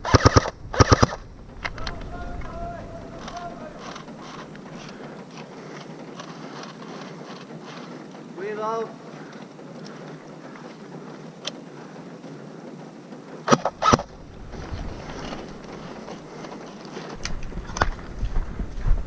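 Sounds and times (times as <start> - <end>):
sharp cracks: 0.0 - 7.9, 13.4 - 18.1
wind on microphone: 13.7 - 16.3, 17.2 - 19.0.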